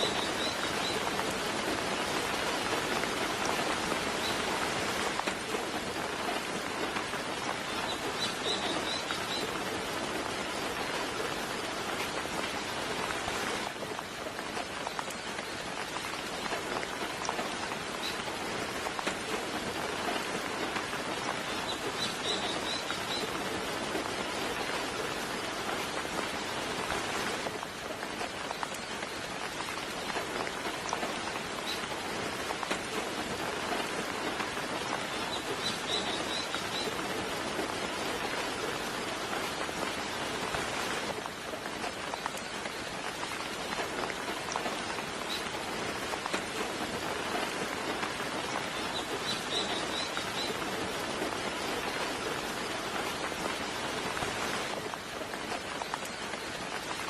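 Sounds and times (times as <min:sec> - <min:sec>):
soft rain falling: 0:00.0 - 0:57.0.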